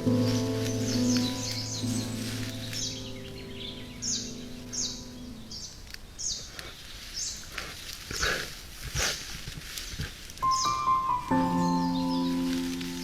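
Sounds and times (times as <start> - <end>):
background music: 0.0 - 5.3, 10.4 - 13.0
bird chirping: 0.0 - 8.4, 9.8 - 13.0
soft rustles: 0.0 - 13.0.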